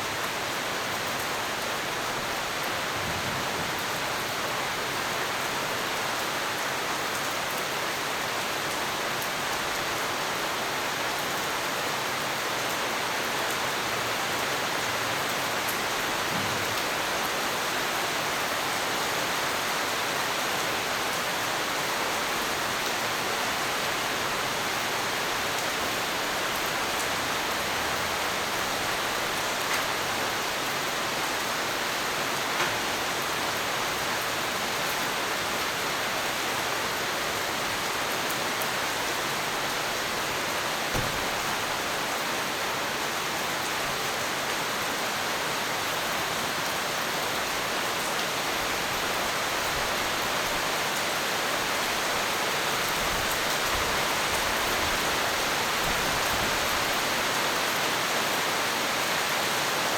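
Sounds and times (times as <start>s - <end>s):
heavy rain hissing: 35.9s - 43.9s.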